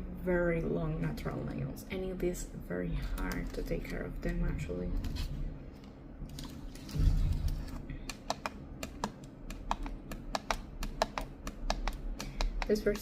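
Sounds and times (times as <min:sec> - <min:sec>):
fingernails tapping on keyboard: 0:08.0 - 0:13.0.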